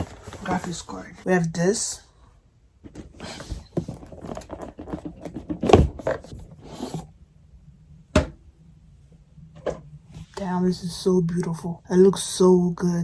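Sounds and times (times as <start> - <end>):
cardboard and plastic rustling: 0.0 - 1.3, 2.8 - 7.1
thump: 8.1 - 8.4.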